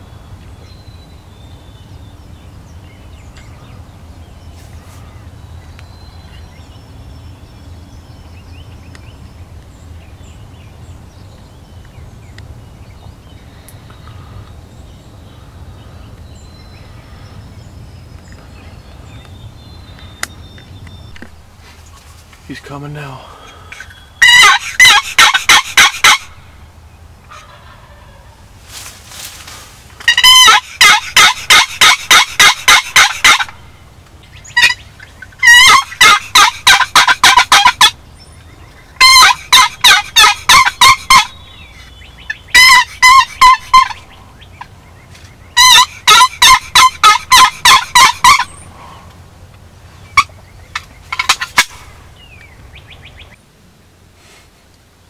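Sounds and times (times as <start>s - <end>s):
wild turkey calling: 22.5s - 26.5s, 27.2s - 28.5s, 30.0s - 49.2s, 50.0s - 53.4s.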